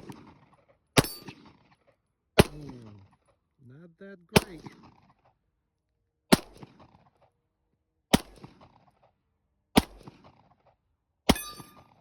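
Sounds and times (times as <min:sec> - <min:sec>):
pistol shots echoing: 0:01.0 - 0:01.6, 0:02.4 - 0:02.8, 0:04.4 - 0:05.0, 0:08.1 - 0:08.9, 0:09.8 - 0:10.5, 0:11.3 - 0:12.0.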